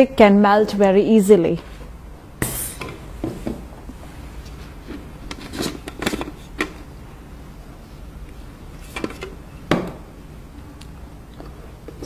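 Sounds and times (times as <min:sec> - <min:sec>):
low steady hum: 0:00.0 - 0:12.0
plastic scrape: 0:04.6 - 0:06.8.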